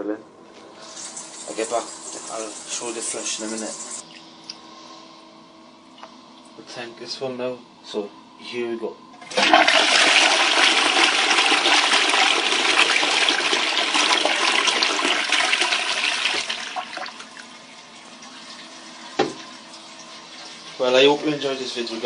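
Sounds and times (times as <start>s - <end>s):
cistern refilling hiss: 0.7s - 4.0s
toilet flushing: 0.8s - 4.0s, 9.2s - 22.0s.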